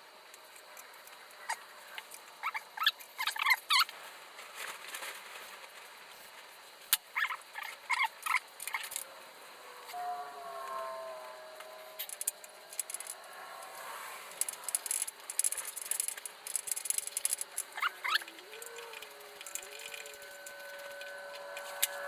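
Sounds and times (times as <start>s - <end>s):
squeaky wavering sound: 8.8s - 22.0s
metal parts and tools rattling: 11.7s - 13.7s, 14.3s - 22.0s.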